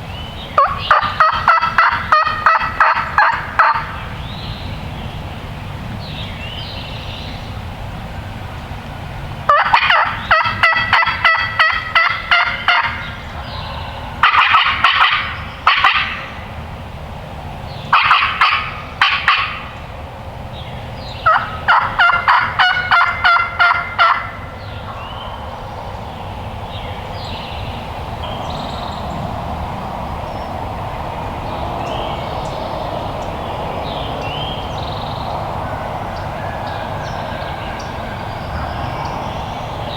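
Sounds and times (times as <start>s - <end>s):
wild turkey calling: 0.5s - 4.4s, 9.5s - 16.6s, 17.8s - 20.0s, 21.1s - 25.5s.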